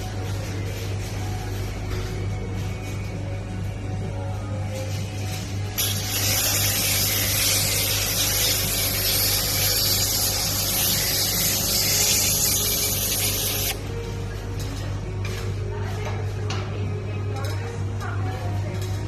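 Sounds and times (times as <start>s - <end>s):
sprayer hissing: 5.8s - 13.8s.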